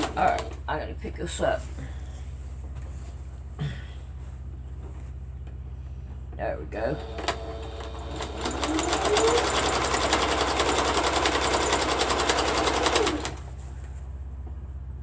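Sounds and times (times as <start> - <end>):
sewing machine stitching: 7.0 - 13.5.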